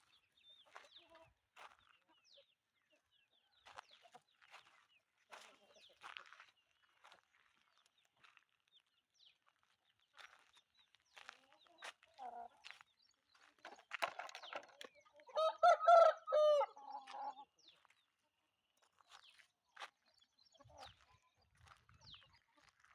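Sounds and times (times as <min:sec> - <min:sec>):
chickens clucking: 0:00.6 - 0:06.4, 0:11.1 - 0:18.1, 0:20.4 - 0:22.9
rooster crowing: 0:15.3 - 0:16.8.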